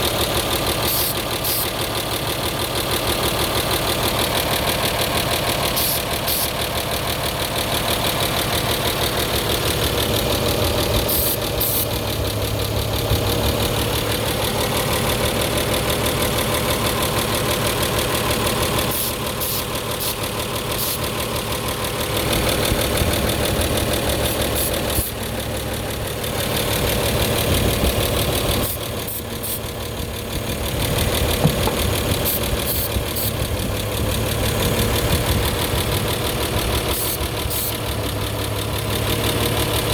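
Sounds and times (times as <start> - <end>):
car engine idling: 0.0 - 39.9
spray can spraying: 0.9 - 1.7, 5.8 - 6.6, 11.0 - 11.9, 18.9 - 21.0, 24.2 - 25.2, 28.6 - 29.7, 32.1 - 33.3, 36.9 - 37.8.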